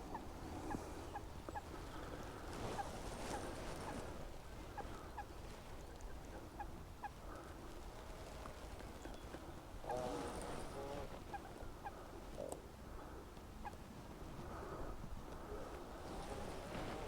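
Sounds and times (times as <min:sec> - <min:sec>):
waterfowl calling: 0:09.2 - 0:13.8.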